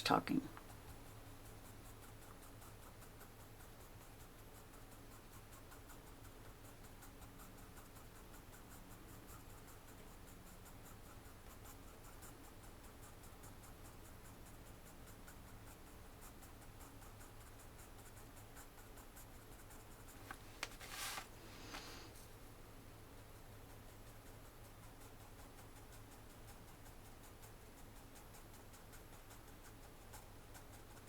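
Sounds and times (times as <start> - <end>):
pencil scratching on paper: 0.7 - 22.0.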